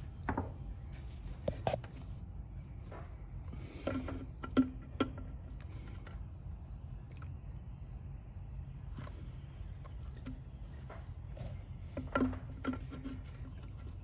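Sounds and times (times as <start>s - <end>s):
steady low hum: 0.0s - 14.0s
light scraping and handling: 0.3s - 6.3s, 8.9s - 14.0s.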